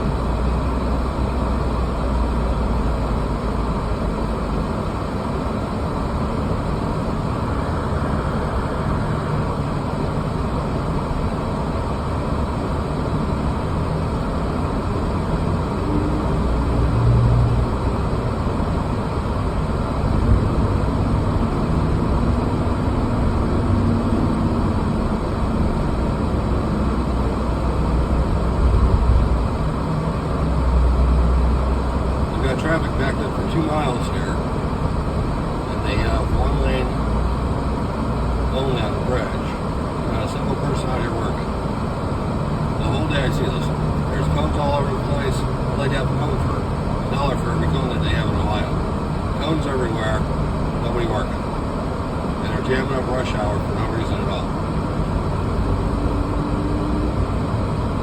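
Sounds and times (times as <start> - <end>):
vehicle engine and road noise: 0.0 - 58.0.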